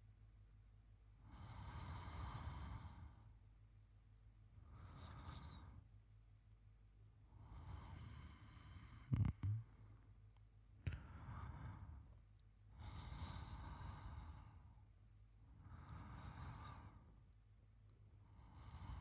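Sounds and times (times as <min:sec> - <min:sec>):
man sleeping breaths: 0:01.2 - 0:03.4, 0:04.6 - 0:05.9, 0:07.2 - 0:10.1, 0:10.9 - 0:17.3, 0:18.2 - 0:19.0.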